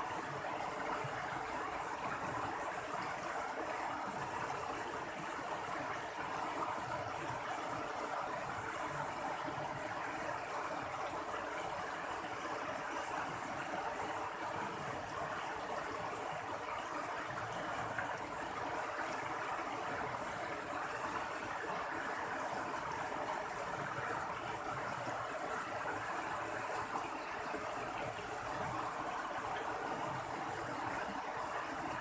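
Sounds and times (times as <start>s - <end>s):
stream water gurgling: 0.0s - 32.0s.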